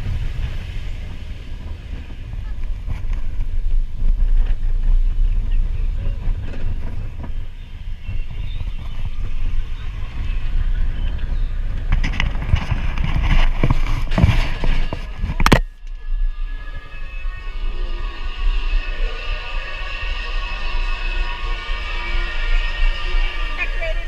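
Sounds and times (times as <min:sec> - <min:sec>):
roller coaster rattle: 0:00.0 - 0:24.0
roller coaster rumbling: 0:00.0 - 0:24.0.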